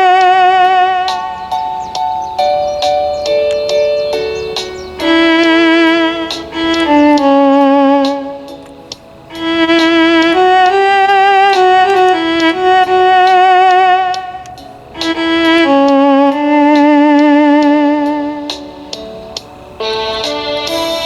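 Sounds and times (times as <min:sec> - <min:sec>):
electronic wind instrument melody: 0:00.0 - 0:21.0.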